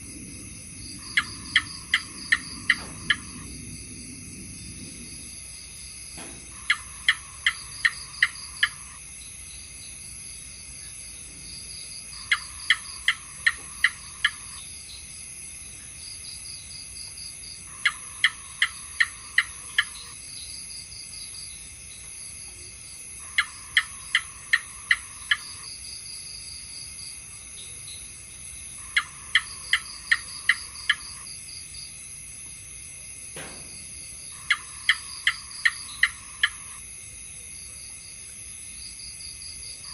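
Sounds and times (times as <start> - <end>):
gecko chirping: 0.8 - 3.6, 6.5 - 9.0, 12.1 - 14.6, 17.7 - 20.2, 23.2 - 25.7, 28.8 - 31.3, 34.3 - 36.8.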